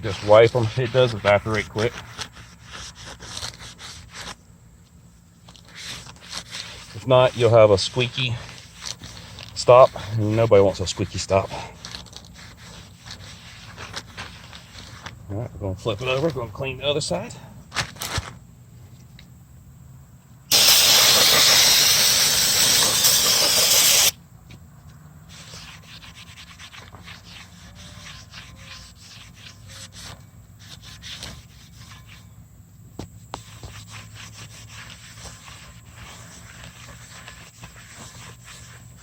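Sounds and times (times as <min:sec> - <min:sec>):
aerosol spray hissing: 0:20.5 - 0:24.2.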